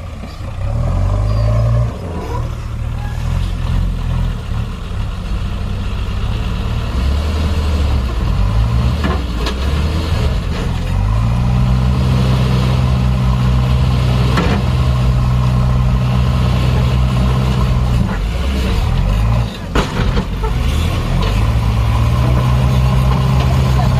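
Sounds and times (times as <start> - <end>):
heavy diesel engine running: 0.0 - 23.9.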